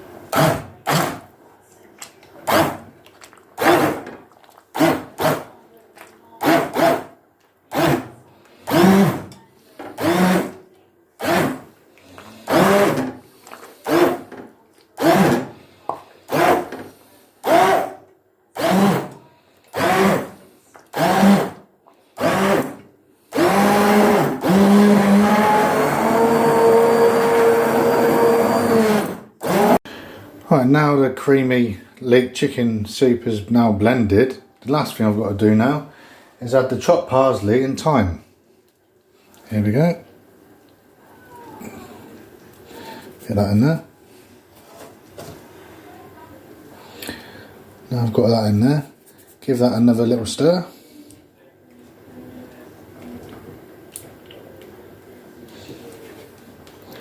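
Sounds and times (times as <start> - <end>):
electric blender whirring: 8.7 - 9.3, 10.0 - 10.6, 11.2 - 11.6, 12.4 - 13.2, 13.8 - 14.3, 15.0 - 15.5, 16.3 - 16.8, 17.4 - 18.0, 18.6 - 21.6, 22.2 - 29.8.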